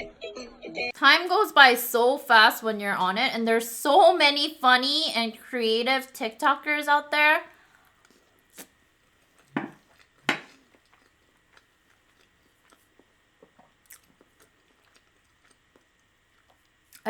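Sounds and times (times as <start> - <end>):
person chewing food: 7.5 - 17.0
wet mouth sounds: 7.5 - 17.0.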